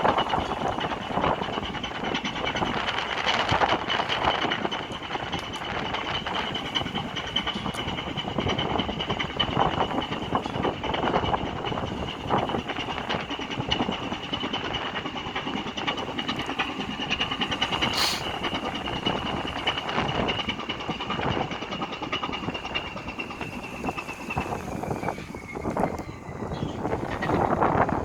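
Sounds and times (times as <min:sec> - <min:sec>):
diesel engine knocking with whine: 0:00.0 - 0:28.0
strong wind: 0:00.0 - 0:28.0
brief high hiss: 0:17.9 - 0:18.2.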